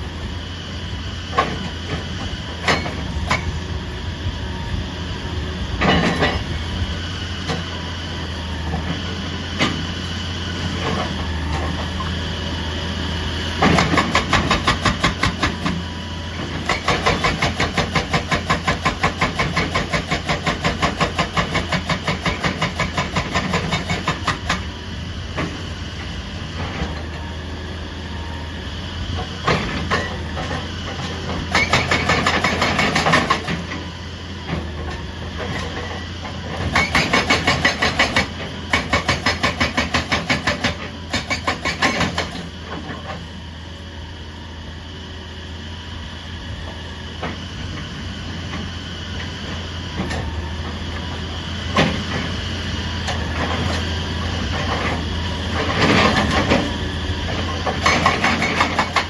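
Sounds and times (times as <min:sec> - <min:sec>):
excavator engine running: 0:00.0 - 0:59.0
hydraulic breaker hammering: 0:13.6 - 0:15.8, 0:16.6 - 0:24.6, 0:31.5 - 0:33.7, 0:36.6 - 0:42.5, 0:57.6 - 0:59.0.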